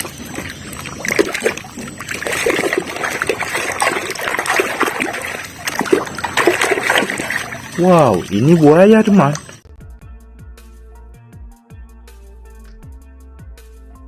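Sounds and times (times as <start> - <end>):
water splashing and trickling: 0.0 - 9.6.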